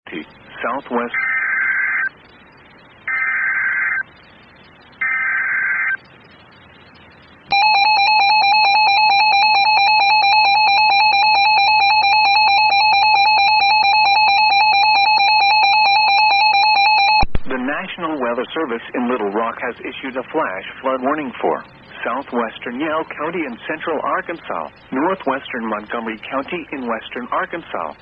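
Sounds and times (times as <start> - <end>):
piercing alert tone: 7.5 - 17.2.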